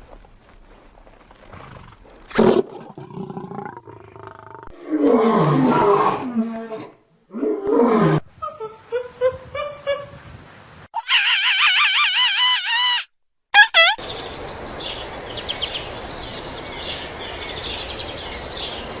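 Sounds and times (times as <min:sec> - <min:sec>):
short sharp calls: 0:11.0 - 0:14.0
small birds chirping: 0:13.8 - 0:19.0.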